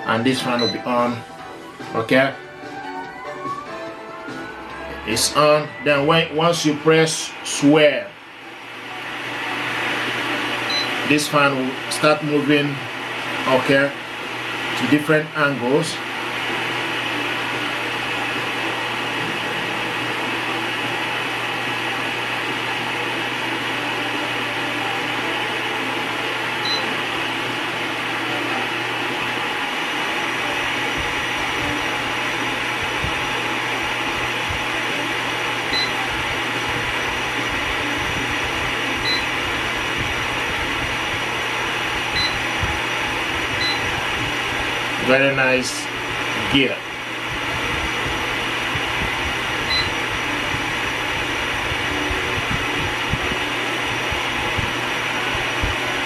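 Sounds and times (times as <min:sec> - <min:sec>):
fan rushing air: 0:00.0 - 0:56.0
motor hum: 0:00.0 - 0:56.0
short high beeps: 0:43.6 - 0:43.8, 0:49.7 - 0:50.0.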